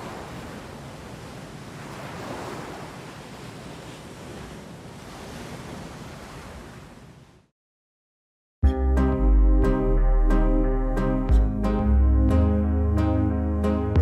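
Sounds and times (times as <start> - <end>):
waves washing ashore: 0.0 - 7.5.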